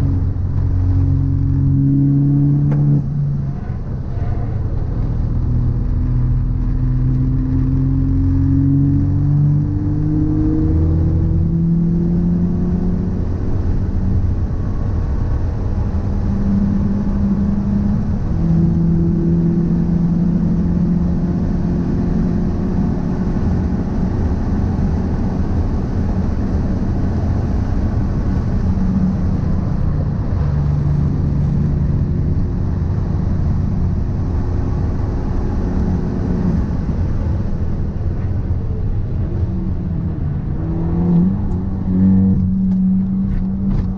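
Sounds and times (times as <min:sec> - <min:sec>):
car engine accelerating: 0:00.0 - 0:43.9
road noise: 0:00.0 - 0:43.9.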